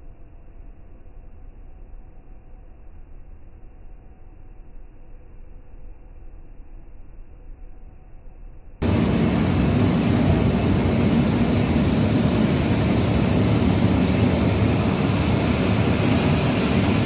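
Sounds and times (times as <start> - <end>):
faint high whine: 0.0 - 17.0
dyeing machine running: 8.8 - 17.0.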